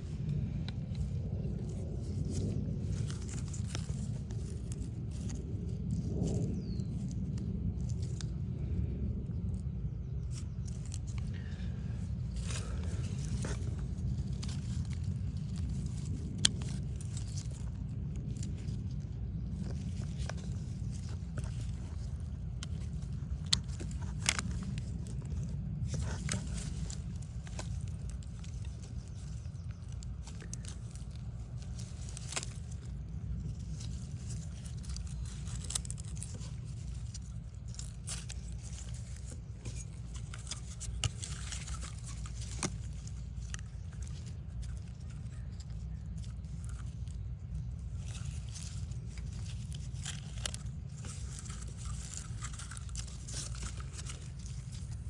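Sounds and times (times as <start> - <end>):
steady low rumble: 0.0 - 55.0
clicks and scrapes on cable wire: 12.3 - 55.0.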